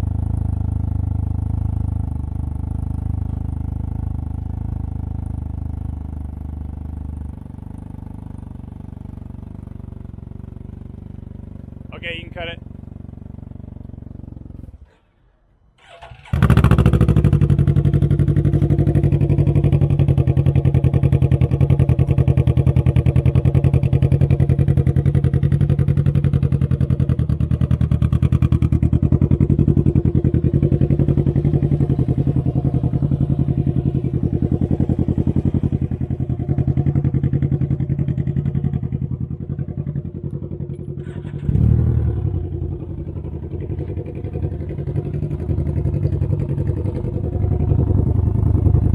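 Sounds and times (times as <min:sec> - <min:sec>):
motorcycle engine idling: 0:00.0 - 0:48.9
engine revving: 0:15.8 - 0:24.0, 0:39.7 - 0:48.9.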